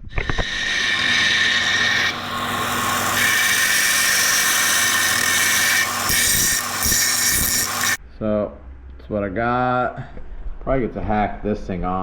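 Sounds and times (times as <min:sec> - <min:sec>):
power tool working metal: 0:00.0 - 0:08.0.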